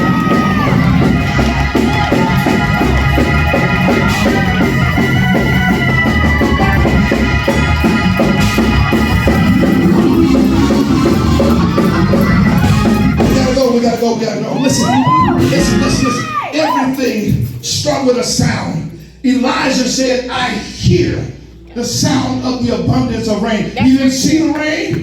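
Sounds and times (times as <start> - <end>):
fast driving drum beat: 0.0 - 13.9
organ chords: 0.0 - 17.5.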